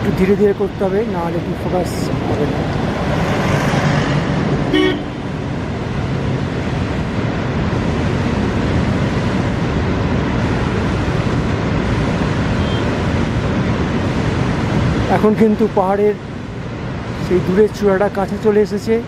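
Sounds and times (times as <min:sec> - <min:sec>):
rushing roadside noise: 0:00.0 - 0:19.0
vehicle horn toot: 0:04.7 - 0:05.2.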